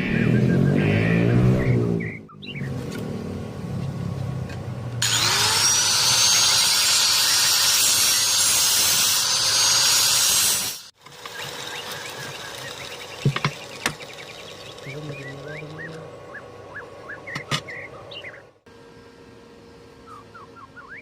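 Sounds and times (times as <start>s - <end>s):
angle grinder on metal: 5.0s - 15.5s.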